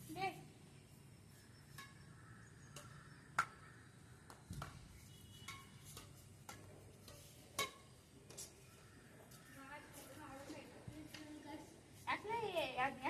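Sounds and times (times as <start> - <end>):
racket hitting shuttlecock: 2.7 - 8.4.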